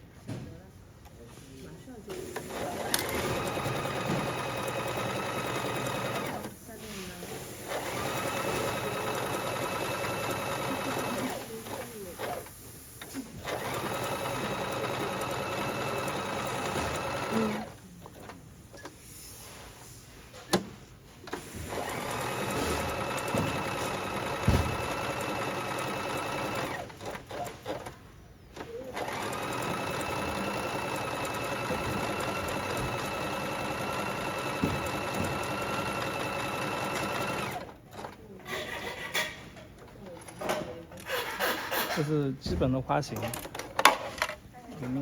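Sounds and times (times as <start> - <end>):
sewing machine stitching: 2.4 - 6.6, 7.6 - 18.4, 21.3 - 28.0, 28.6 - 38.8.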